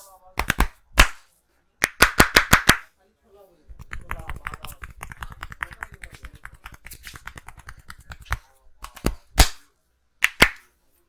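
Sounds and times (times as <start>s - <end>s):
hands tapping on head: 0.4s - 1.2s, 1.8s - 2.8s, 3.8s - 9.6s, 10.2s - 10.6s
hand slaps: 0.4s - 2.9s, 3.8s - 10.7s.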